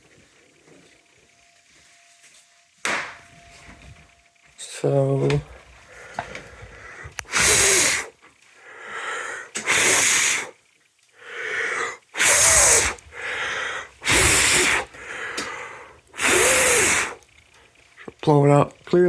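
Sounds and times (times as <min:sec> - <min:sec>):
quiet in-breaths: 0:05.4 - 0:18.2
person blowing hard: 0:07.0 - 0:08.1, 0:09.6 - 0:10.5, 0:11.3 - 0:17.2.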